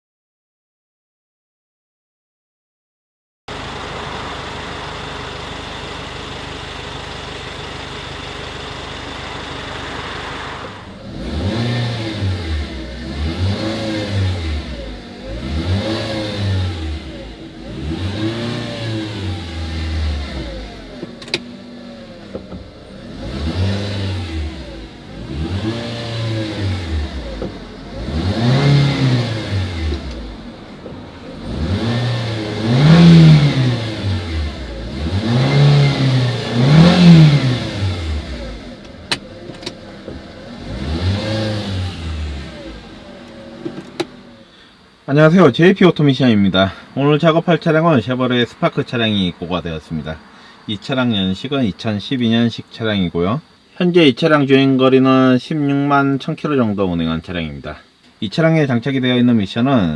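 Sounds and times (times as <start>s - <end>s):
small car engine revving: 3.5s - 45.1s.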